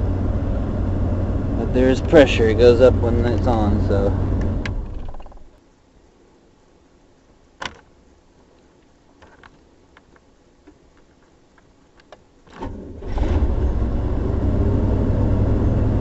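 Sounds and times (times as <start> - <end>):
loud low rumble: 0.0 - 4.9.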